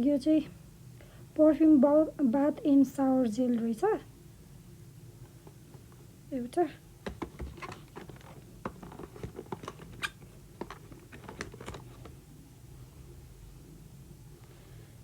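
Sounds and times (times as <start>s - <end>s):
packaging and bottles handled: 7.0s - 12.2s.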